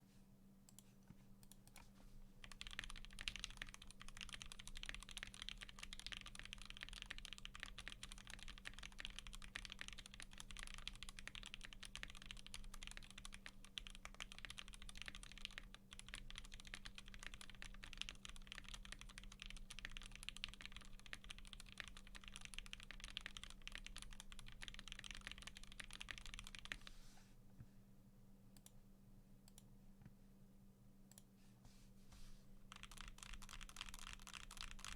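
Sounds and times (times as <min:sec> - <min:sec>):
fast mechanical keyboard typing: 0:02.4 - 0:26.9, 0:32.7 - 0:34.9.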